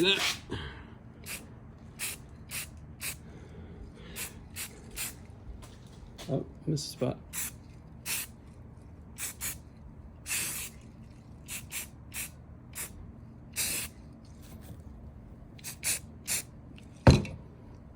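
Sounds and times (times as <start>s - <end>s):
spray paint hissing: 0.2s - 0.4s, 1.2s - 1.4s, 2.0s - 3.2s, 4.2s - 5.2s, 7.3s - 8.4s, 9.2s - 9.6s, 10.2s - 10.8s, 11.4s - 14.0s, 15.6s - 16.5s.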